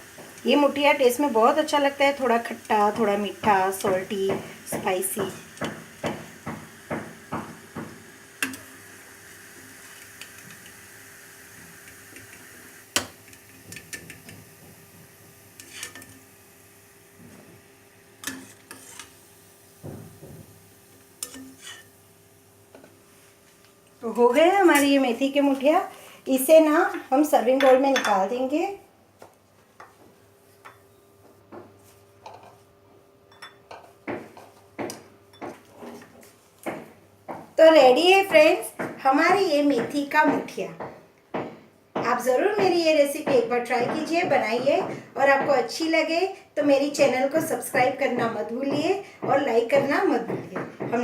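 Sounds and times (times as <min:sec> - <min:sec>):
utensils clinking against dishes: 0:21.2 - 0:21.9.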